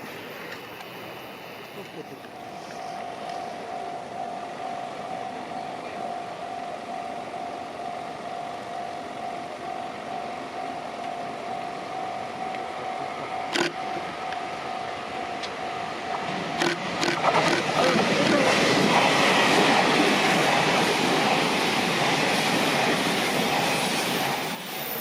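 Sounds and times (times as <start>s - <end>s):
level crossing warning bell: 2.2s - 18.6s.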